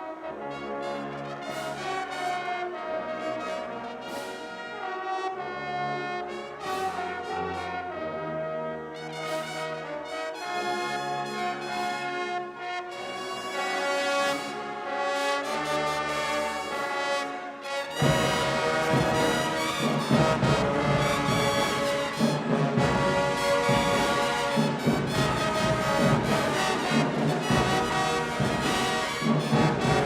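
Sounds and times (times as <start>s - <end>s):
marching band brass chords: 0.0s - 30.0s
full band with drums: 17.9s - 30.0s.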